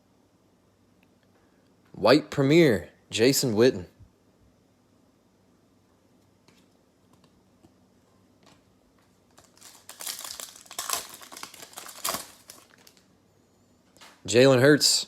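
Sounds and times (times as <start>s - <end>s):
foil wrapper crinkling and tearing: 9.3s - 13.1s.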